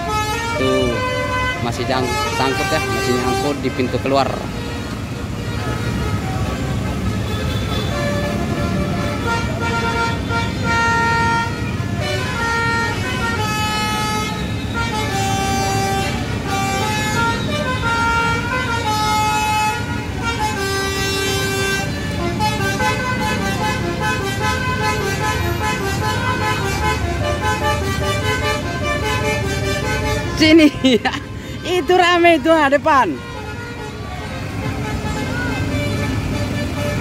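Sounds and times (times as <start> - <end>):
engine noise: 0.0 - 37.0
multi-tone bus horn melody: 0.0 - 37.0
crowd noise: 29.4 - 37.0.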